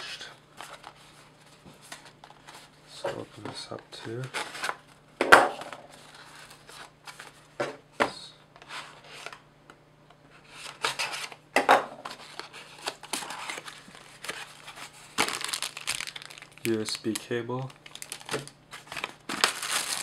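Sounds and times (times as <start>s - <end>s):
packaging rustling and scraping: 0.0s - 4.9s, 10.4s - 11.4s, 12.0s - 20.0s.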